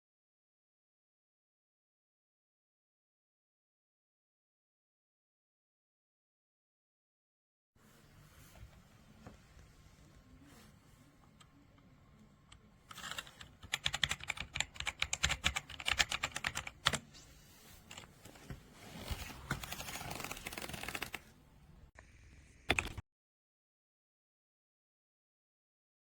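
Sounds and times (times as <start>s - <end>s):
mechanical keyboard typing: 12.9s - 17.0s, 19.5s - 21.3s, 22.7s - 23.0s.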